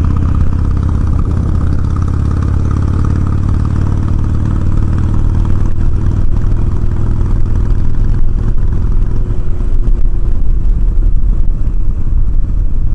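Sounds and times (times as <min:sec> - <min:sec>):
motorcycle engine running: 0:00.0 - 0:12.9.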